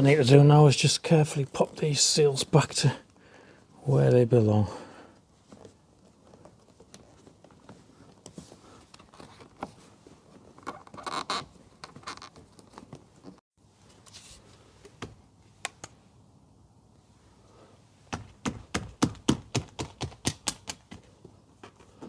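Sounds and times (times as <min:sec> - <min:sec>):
rubber seal rubbing and scratching: 0:10.4 - 0:13.4.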